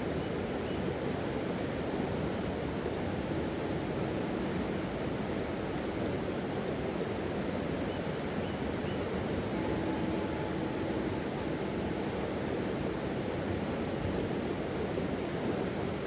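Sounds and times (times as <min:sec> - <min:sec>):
flowing water rushing: 0:00.0 - 0:16.0
singing bowl tone: 0:08.8 - 0:14.3.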